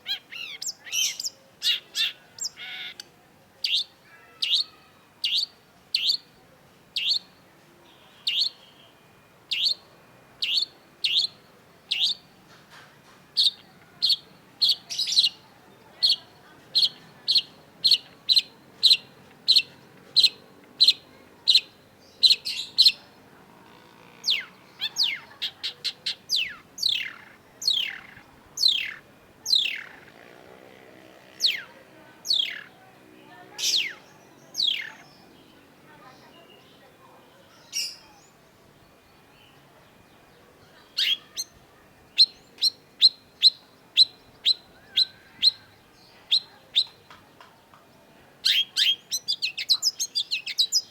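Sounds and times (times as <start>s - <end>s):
shrike calling: 13.4s - 32.9s, 33.5s - 35.3s, 40.7s - 47.0s, 48.4s - 50.9s.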